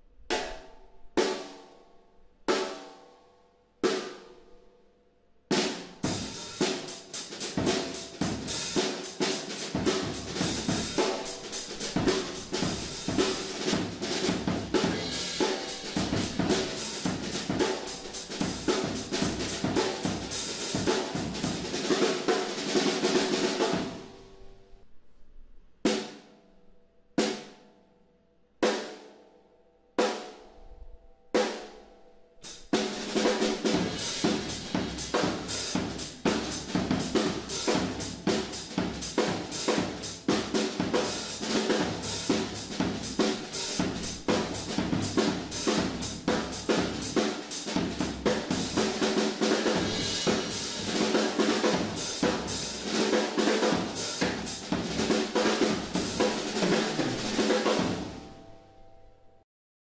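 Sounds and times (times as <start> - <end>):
drum kit playing a groove: 5.5 - 24.2, 32.4 - 58.4.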